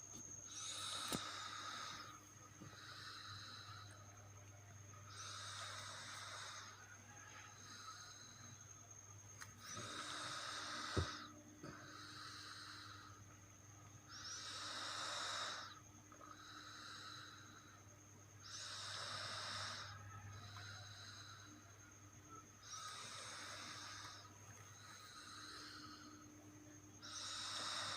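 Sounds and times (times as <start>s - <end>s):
steady low hum: 0.0s - 27.9s
person snoring: 9.7s - 13.1s, 14.1s - 17.5s, 18.5s - 21.5s, 27.0s - 27.9s.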